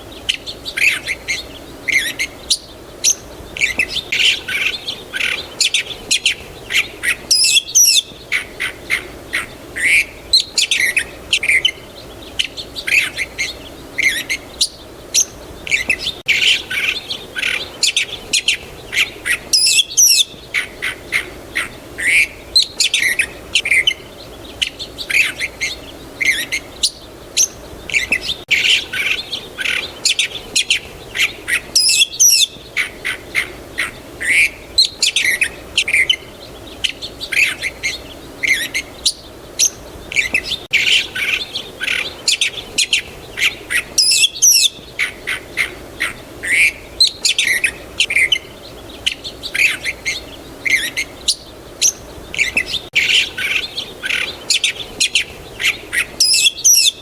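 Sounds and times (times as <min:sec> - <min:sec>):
songbirds chirping and twittering: 0:00.0 - 0:57.0
harsh bird squawks: 0:31.5 - 0:36.2, 0:40.2 - 0:48.4, 0:50.7 - 0:57.0.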